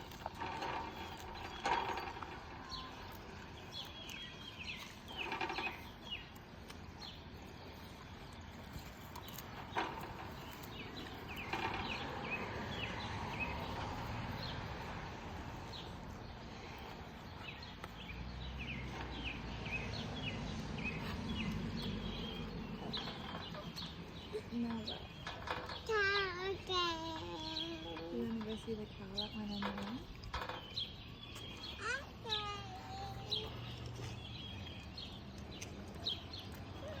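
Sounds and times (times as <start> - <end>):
cow eating: 0.0 - 25.5
small birds chirping: 0.0 - 37.0.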